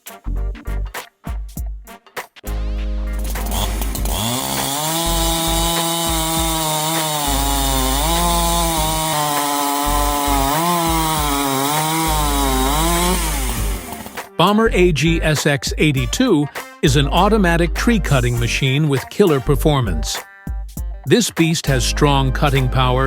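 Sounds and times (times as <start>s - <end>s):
background music: 0.0s - 23.0s
chainsaw engine revving: 3.2s - 14.2s.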